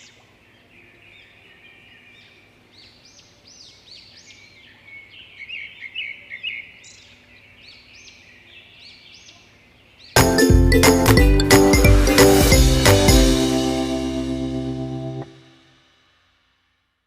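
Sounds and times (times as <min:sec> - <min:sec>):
wild birds singing and chirping: 0:00.0 - 0:10.2.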